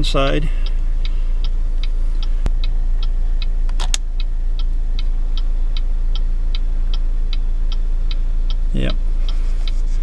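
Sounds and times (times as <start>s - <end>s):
turn signal flasher ticking: 0.0s - 10.0s
sharp click: 3.6s - 4.1s.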